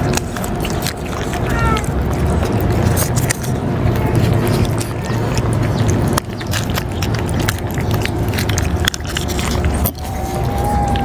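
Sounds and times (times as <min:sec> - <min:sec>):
cats crunching dry food: 0:00.0 - 0:11.0
steady low rumble: 0:00.0 - 0:11.0.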